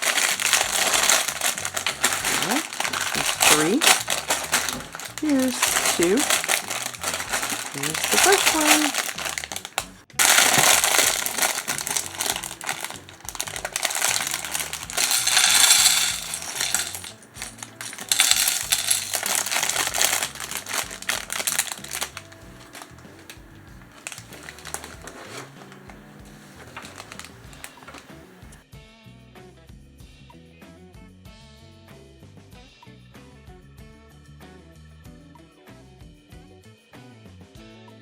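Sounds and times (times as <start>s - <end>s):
plastic pieces rattling: 0.0s - 28.6s
soft background music: 0.0s - 28.6s.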